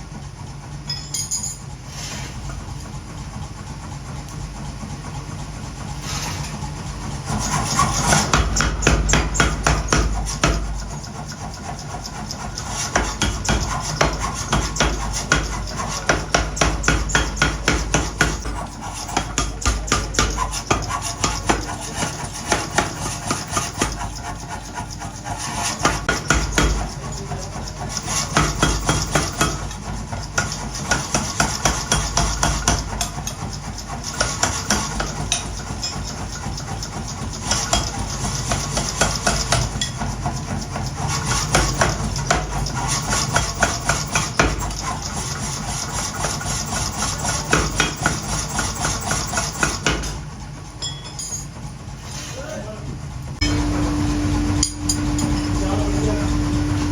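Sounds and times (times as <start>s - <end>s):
steady machine hum: 0.0s - 56.9s
hammer on metal: 8.0s - 10.9s, 12.8s - 24.4s, 25.6s - 36.1s, 37.4s - 40.0s, 41.3s - 44.9s, 46.2s - 50.2s, 54.6s - 56.7s.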